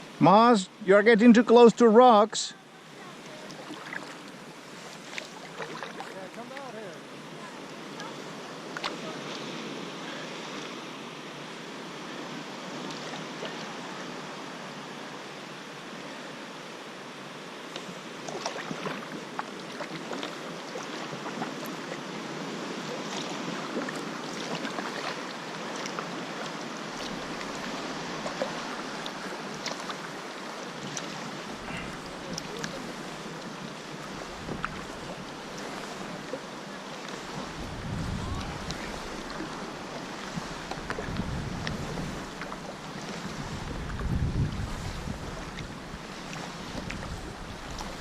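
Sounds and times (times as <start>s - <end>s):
small waves lapping: 0.0s - 48.0s
water splashes and drips: 5.0s - 6.8s.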